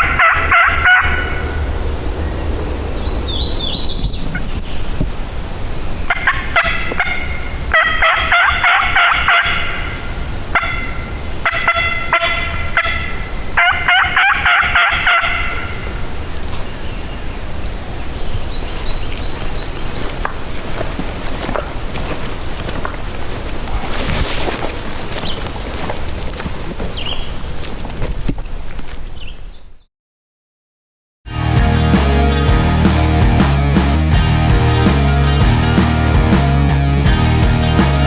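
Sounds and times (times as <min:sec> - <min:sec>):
turkey gobbling: 0:00.0 - 0:04.8, 0:06.0 - 0:27.3.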